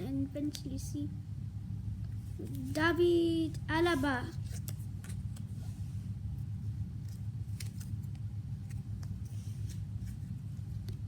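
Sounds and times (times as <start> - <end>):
steady low hum: 0.0 - 11.0
trading cards flipping: 4.3 - 5.5, 7.0 - 11.0.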